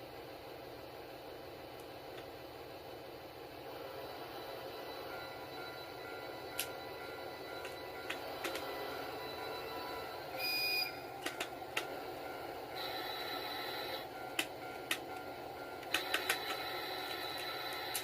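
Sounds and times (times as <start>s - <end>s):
model train running on track: 0.0s - 18.0s
level crossing warning tone: 3.9s - 18.0s
sharp clicks: 7.6s - 8.7s, 11.2s - 12.0s, 14.3s - 18.0s.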